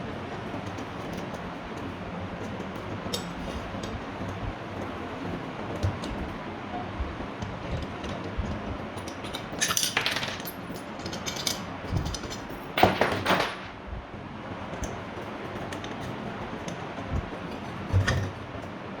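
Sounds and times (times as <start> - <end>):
metal parts and tools clinking: 9.0 - 13.8.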